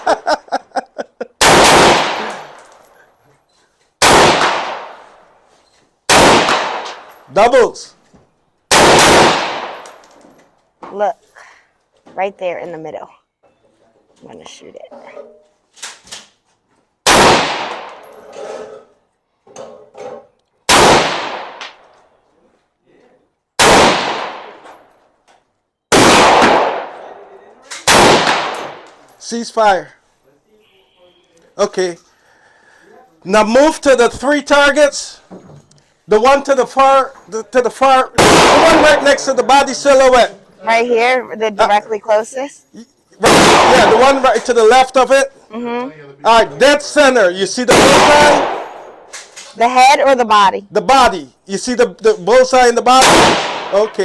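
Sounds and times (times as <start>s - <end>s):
loud rifle shots echoing: 1.4s - 2.7s, 4.0s - 5.2s, 6.1s - 7.2s, 8.7s - 10.0s, 17.0s - 18.0s, 20.7s - 21.8s, 23.6s - 24.7s, 25.9s - 27.2s, 27.8s - 29.0s, 38.1s - 39.6s, 43.2s - 44.2s, 47.7s - 49.1s, 52.9s - 54.0s.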